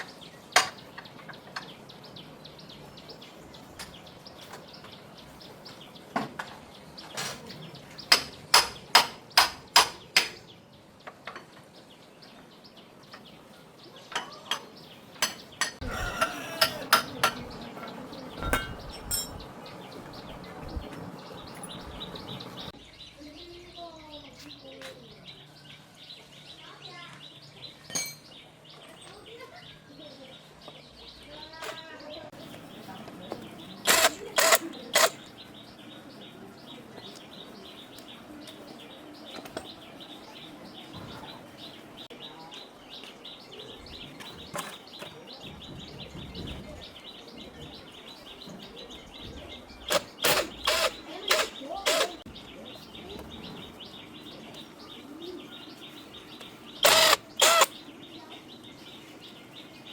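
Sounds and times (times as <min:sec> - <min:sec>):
birds chirping: 0:00.0 - 0:59.9
metal striking metal: 0:18.4 - 0:19.4.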